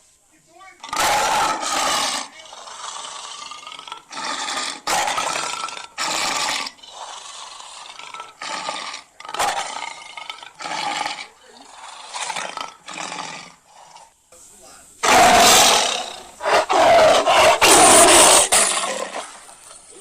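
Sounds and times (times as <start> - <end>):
synthetic dragon roars: 15.0 - 19.4.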